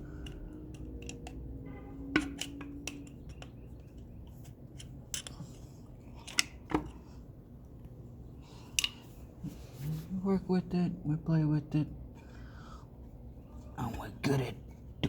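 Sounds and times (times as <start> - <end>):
metal tools clicking and tapping: 0.0 - 7.0.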